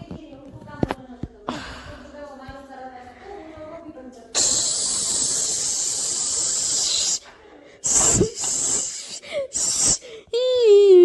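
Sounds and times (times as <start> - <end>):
loud hiss: 4.4 - 7.2, 7.8 - 10.1.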